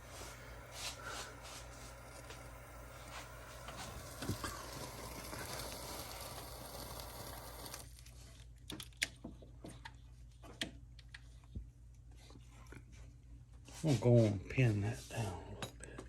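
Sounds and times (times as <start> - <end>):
gas torch flame hissing: 0.0 - 8.1.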